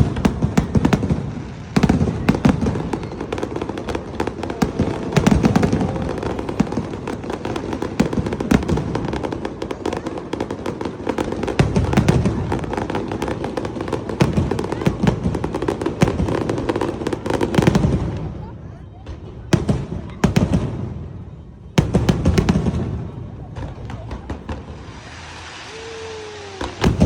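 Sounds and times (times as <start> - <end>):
fireworks crackling and popping: 0.0 - 27.0
low firework booms: 26.3 - 27.0.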